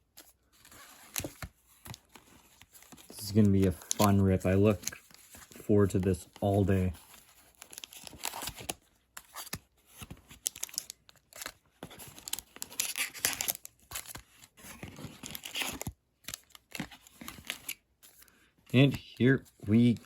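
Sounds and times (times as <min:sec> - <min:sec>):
cardboard packaging tearing and crinkling: 0:06.3 - 0:17.8.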